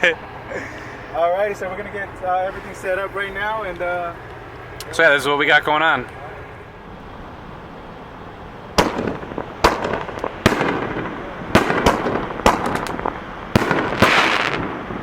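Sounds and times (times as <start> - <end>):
fireworks bangs: 8.7 - 15.0.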